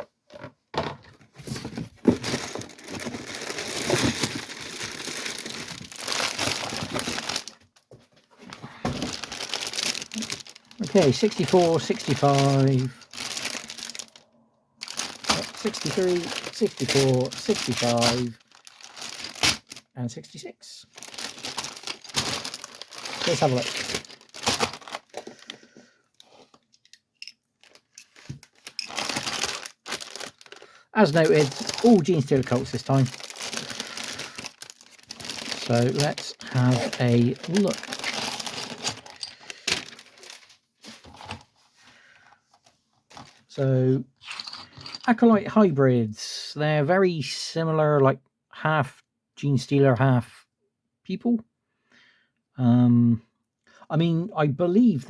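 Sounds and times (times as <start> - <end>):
packaging crinkling and tearing: 1.4 - 7.8, 8.8 - 19.9, 20.8 - 26.6, 27.6 - 41.4, 43.1 - 43.5.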